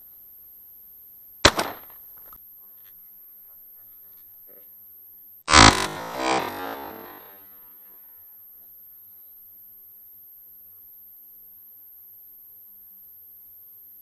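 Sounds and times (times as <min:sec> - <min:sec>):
sharp crack: 0:01.4 - 0:02.4, 0:05.5 - 0:07.4
loud harsh buzzing: 0:05.5 - 0:07.7.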